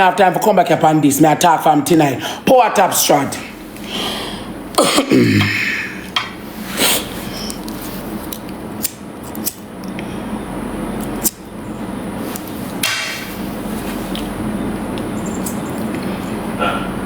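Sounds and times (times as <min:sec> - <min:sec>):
steady low hum: 0:00.0 - 0:17.0
rustling of small things handled: 0:13.3 - 0:14.4.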